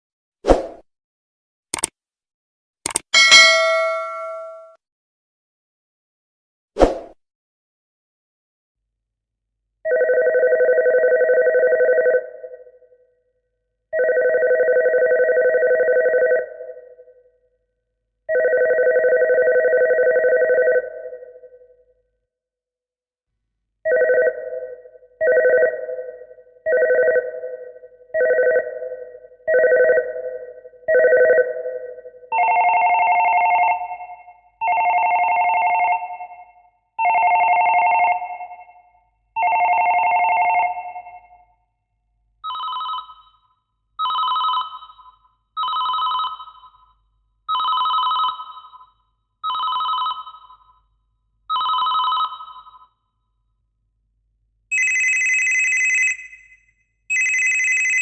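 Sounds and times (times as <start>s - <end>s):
telephone ringing: 3.2s - 4.6s, 9.9s - 12.5s, 14.0s - 16.7s, 18.3s - 21.0s, 23.9s - 24.6s, 25.2s - 25.9s, 34.6s - 36.1s, 37.0s - 38.3s, 39.4s - 40.9s, 42.4s - 46.9s, 47.5s - 50.8s, 51.5s - 53.0s, 54.7s - 58.0s.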